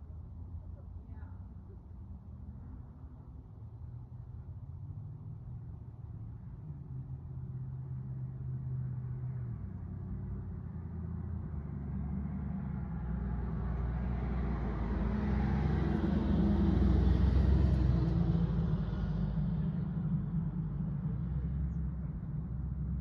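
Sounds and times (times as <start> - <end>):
road vehicle passing: 7.0 - 23.0.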